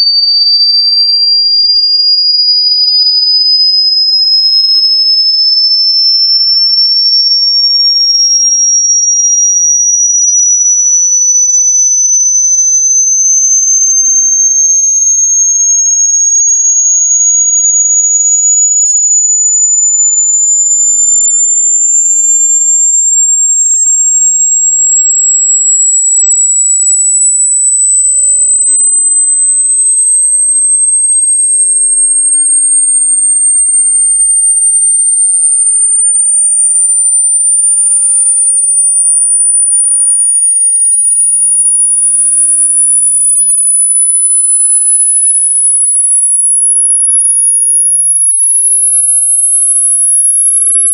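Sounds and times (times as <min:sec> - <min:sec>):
high-pitched electronic sine tone: 0:00.0 - 0:50.9.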